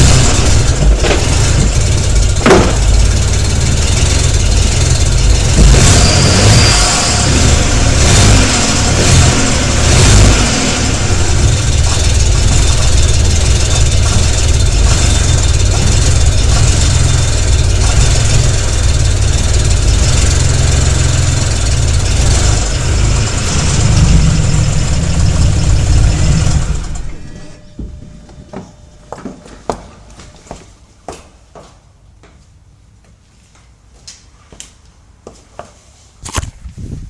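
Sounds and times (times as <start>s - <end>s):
car engine running roughly: 0.0s - 27.6s.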